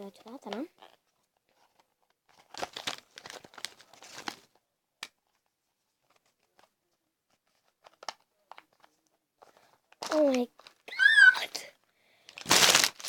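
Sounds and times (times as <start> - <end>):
plastic wrapping crinkling and tearing: 2.3 - 4.5, 9.9 - 13.0.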